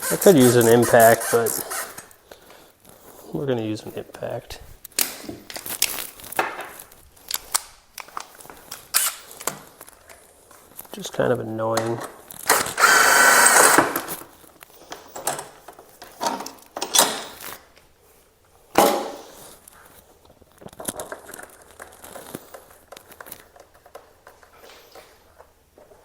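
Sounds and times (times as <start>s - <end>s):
clicks and rattles of parts: 4.9s - 10.9s, 11.7s - 17.9s, 18.8s - 26.0s
impact tool running: 12.5s - 14.1s.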